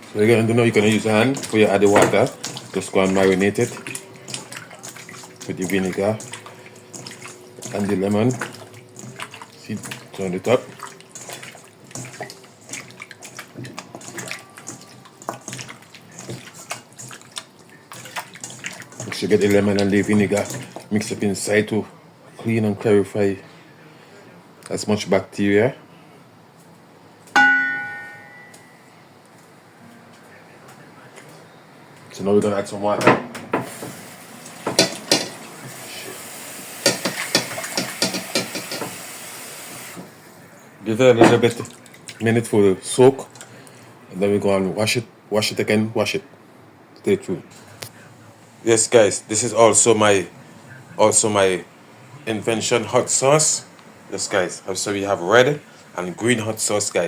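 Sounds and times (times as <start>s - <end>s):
wet sloshing and squelching: 0.0s - 21.5s, 41.4s - 42.3s
water running into a bowl: 0.3s - 21.4s, 33.6s - 40.2s.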